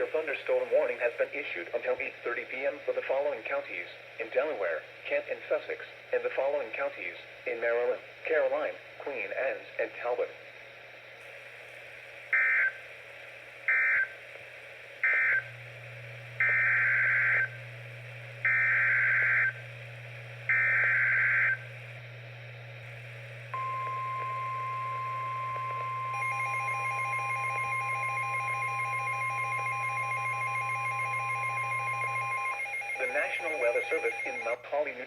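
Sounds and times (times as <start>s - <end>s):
steady warning alarm tone: 12.3s - 12.8s, 13.7s - 14.2s, 15.0s - 22.0s, 22.9s - 34.6s
data tone bursts: 23.5s - 34.6s
rapidly pulsing electronic beep: 23.6s - 34.6s.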